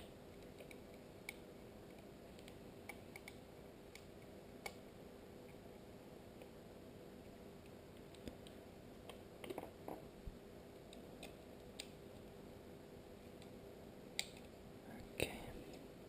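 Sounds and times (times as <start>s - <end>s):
small parts clicking and tapping: 0.0s - 4.8s
low steady hum: 0.0s - 16.0s.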